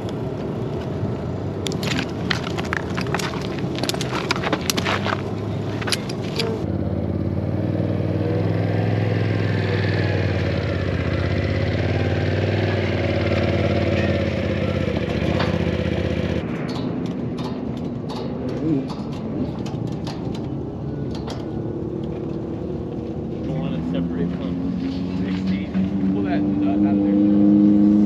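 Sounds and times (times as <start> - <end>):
vehicle engine running: 0.0 - 16.5.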